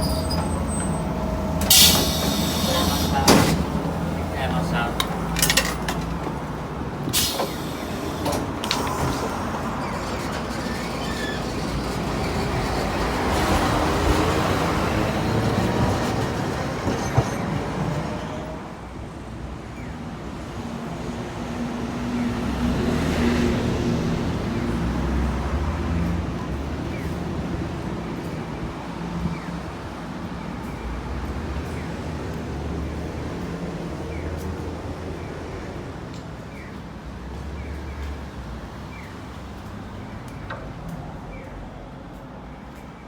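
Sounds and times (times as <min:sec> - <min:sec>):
vehicle engine rumble: 0:00.0 - 0:15.9.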